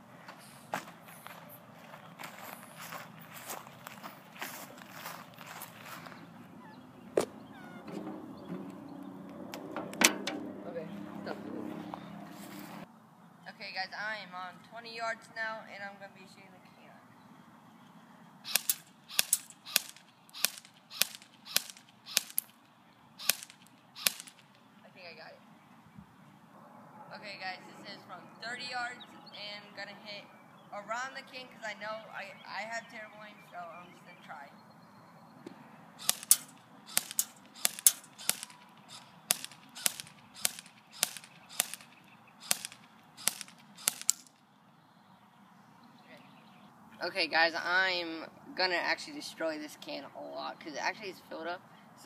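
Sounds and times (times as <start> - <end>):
airsoft rifle shots: 18.5 - 22.6, 23.2 - 24.6, 36.0 - 44.4.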